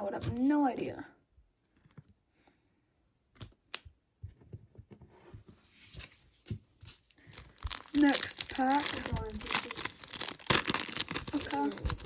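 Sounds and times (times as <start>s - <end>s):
faint rustling of foil card packs: 6.0s - 12.0s.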